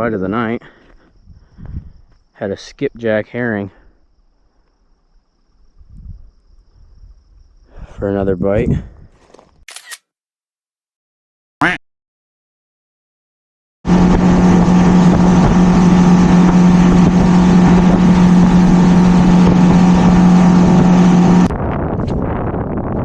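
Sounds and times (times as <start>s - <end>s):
wind noise on microphone: 1.2s - 2.2s, 5.6s - 9.3s, 13.9s - 23.0s
outboard motor running: 13.9s - 21.5s.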